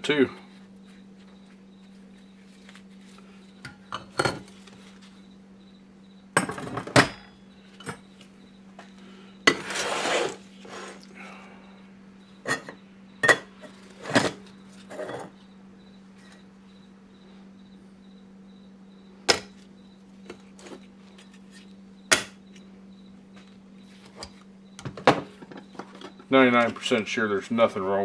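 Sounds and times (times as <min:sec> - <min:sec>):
metal scraping: 0:09.5 - 0:11.0.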